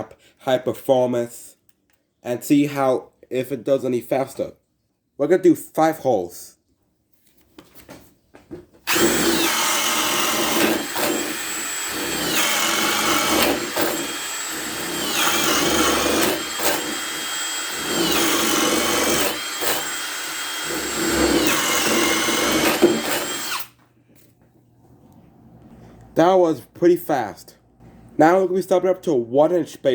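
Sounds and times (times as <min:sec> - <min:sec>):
drill whining while boring: 0:08.9 - 0:23.8.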